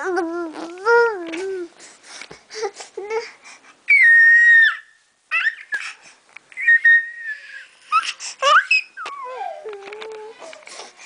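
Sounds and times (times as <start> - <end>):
baby squealing: 3.9 - 6.0, 6.6 - 10.6.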